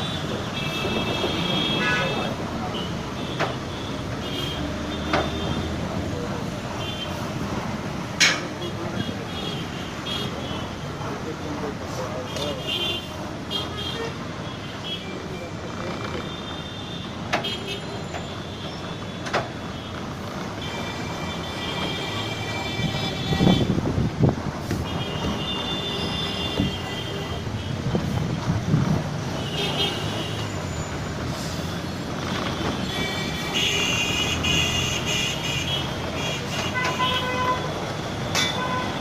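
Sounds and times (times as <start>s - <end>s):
car horns: 0.0s - 5.9s, 16.0s - 23.8s, 24.7s - 28.1s, 29.2s - 31.1s, 32.4s - 39.0s
road traffic: 0.0s - 39.0s
heavy vehicle rumbling by: 30.4s - 33.5s.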